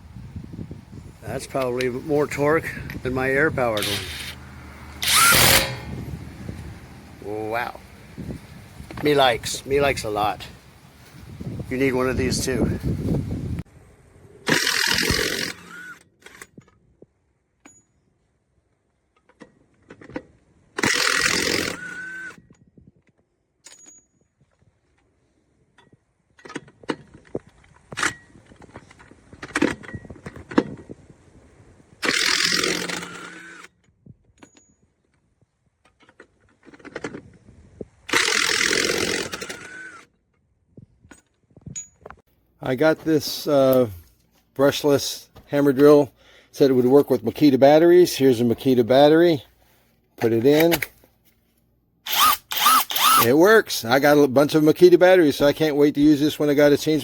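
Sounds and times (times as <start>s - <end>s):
impact wrench hammering: 5.0s - 6.1s.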